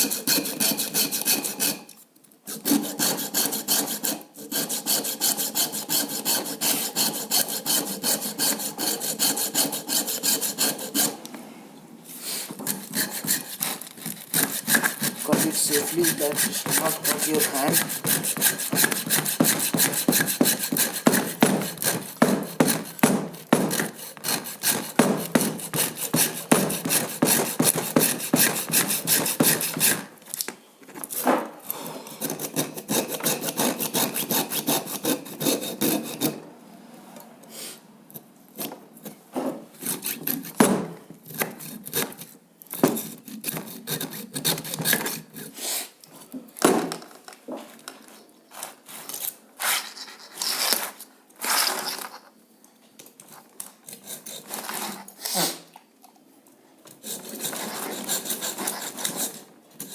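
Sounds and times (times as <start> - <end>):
hacksaw sawing metal: 0.0 - 1.9, 2.5 - 11.2, 12.6 - 30.1, 32.0 - 36.4, 39.8 - 40.6, 41.3 - 45.6, 53.9 - 55.0, 56.9 - 59.9.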